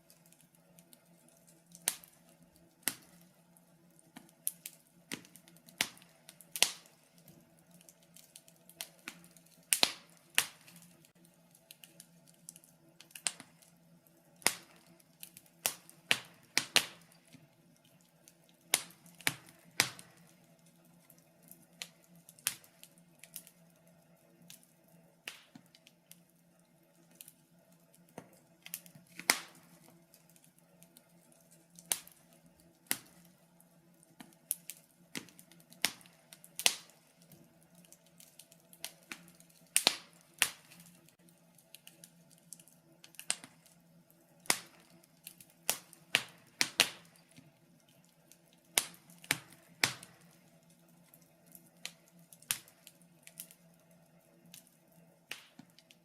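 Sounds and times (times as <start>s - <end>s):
faint steady hum: 0.0s - 56.0s
wood fire crackling: 0.0s - 56.0s.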